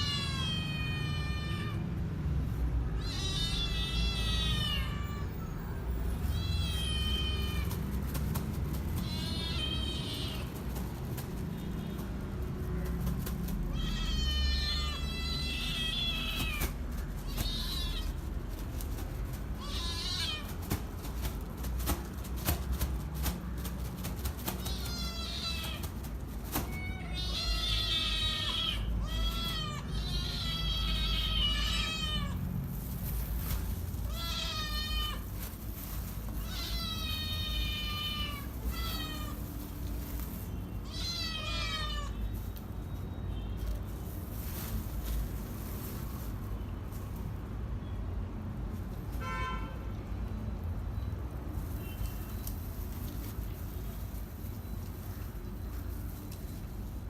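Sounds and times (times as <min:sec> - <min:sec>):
kittens meowing: 0:00.0 - 0:02.0, 0:02.9 - 0:07.8, 0:08.9 - 0:10.6, 0:13.6 - 0:18.6, 0:19.6 - 0:20.8, 0:26.5 - 0:32.5, 0:36.4 - 0:39.7, 0:40.8 - 0:42.4.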